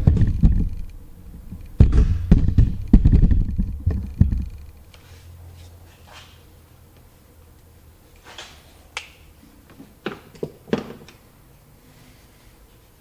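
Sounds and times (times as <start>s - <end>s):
plastic trim knocking and rattling: 0.0s - 4.6s.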